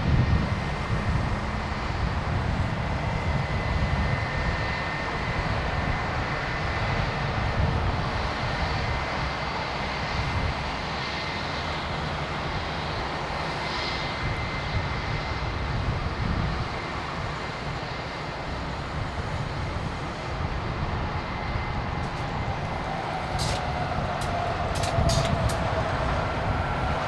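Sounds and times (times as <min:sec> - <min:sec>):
jet engines running: 0:18.5 - 0:27.0.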